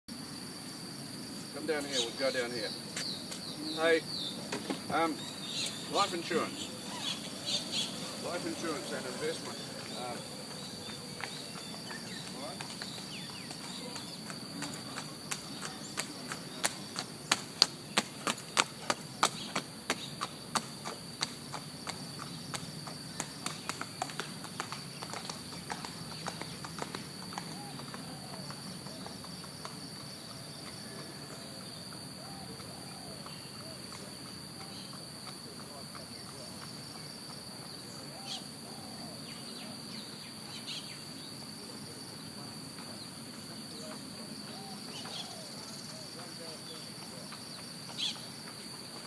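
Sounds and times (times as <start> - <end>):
high-pitched insect chorus: 0.1 - 49.0
bird chirping: 1.6 - 16.7.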